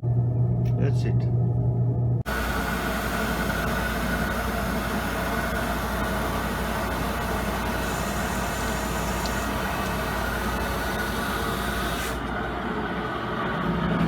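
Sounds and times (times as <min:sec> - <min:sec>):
machine hum: 0:00.0 - 0:14.0
even hiss: 0:02.3 - 0:12.3.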